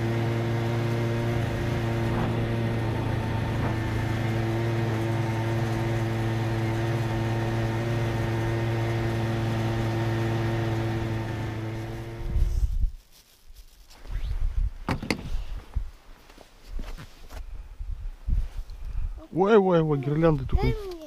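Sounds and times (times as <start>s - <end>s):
vehicle engine running: 0.0s - 12.8s.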